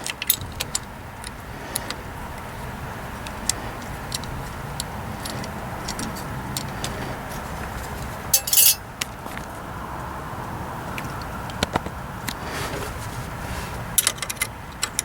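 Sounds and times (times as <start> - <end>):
metallic jingling: 8.3 - 8.8
small metal parts clinking: 8.3 - 8.8, 14.0 - 15.0.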